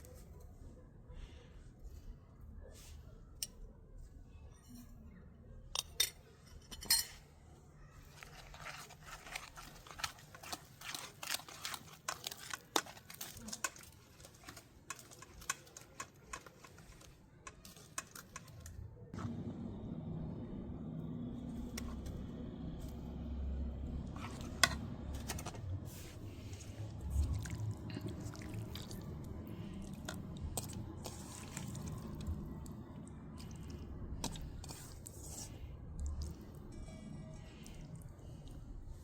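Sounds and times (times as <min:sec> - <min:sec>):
utensils clinking in a bowl: 0:05.7 - 0:07.3, 0:08.1 - 0:18.8, 0:24.0 - 0:32.7
low steady hum: 0:19.0 - 0:39.0.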